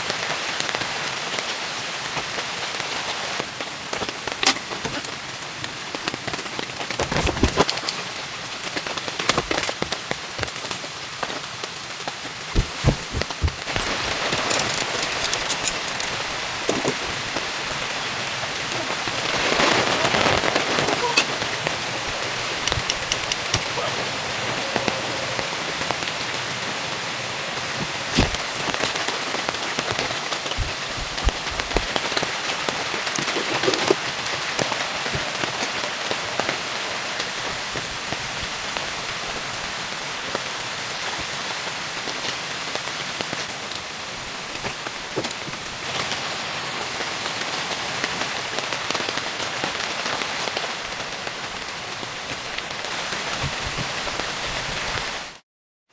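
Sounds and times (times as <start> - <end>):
raindrops ticking: 0.0 - 40.6
light rain: 0.0 - 55.4
louder knocks: 12.6 - 13.9.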